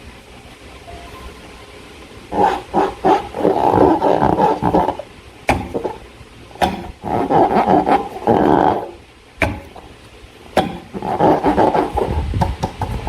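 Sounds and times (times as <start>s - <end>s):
slime balloon squeaking and squelching: 2.3s - 6.0s, 6.6s - 9.0s, 10.6s - 12.2s.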